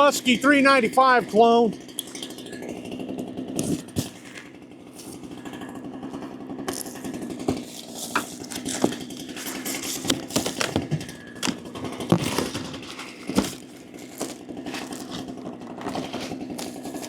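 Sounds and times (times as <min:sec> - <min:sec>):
chainsaw idling: 0:00.0 - 0:17.0
clicks and knocks of handled parts: 0:06.7 - 0:17.0.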